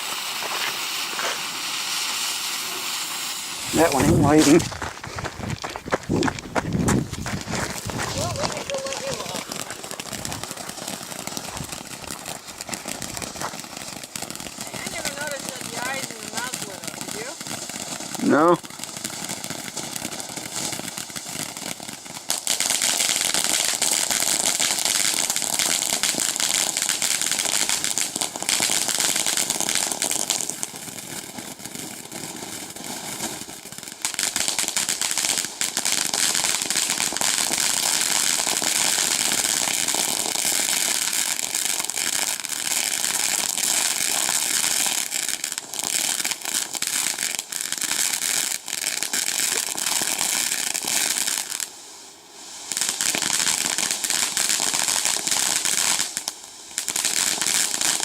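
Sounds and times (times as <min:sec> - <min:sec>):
firework crackling: 0:00.0 - 0:58.0
firework spraying sparks hiss: 0:00.0 - 0:58.0.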